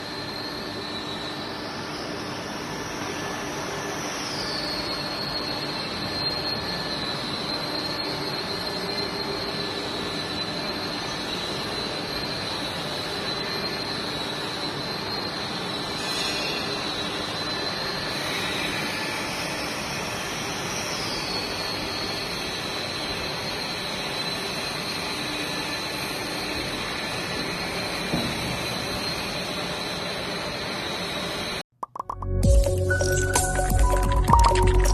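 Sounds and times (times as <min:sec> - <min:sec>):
drum mixer running with whine: 0:31.8 - 0:34.9.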